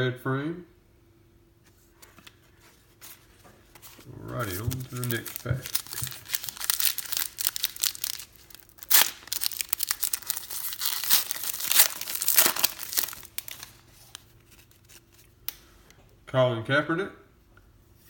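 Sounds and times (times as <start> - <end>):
wrapper crinkling: 3.0 - 15.6
wrapper ripping: 3.8 - 15.6.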